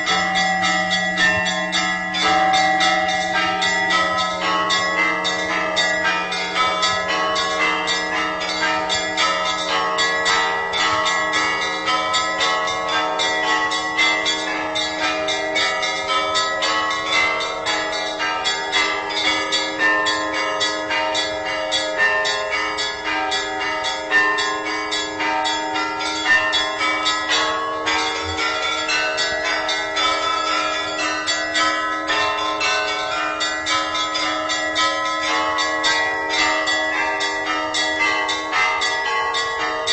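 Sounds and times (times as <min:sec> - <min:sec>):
deep church bells humming: 0:00.0 - 0:39.9
higher bells striking rapidly: 0:00.0 - 0:39.9.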